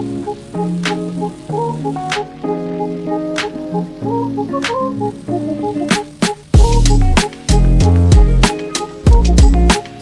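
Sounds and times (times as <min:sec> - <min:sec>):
electronic keyboard music with beat: 0:00.0 - 0:10.0
sharp percussion hits: 0:05.9 - 0:09.8.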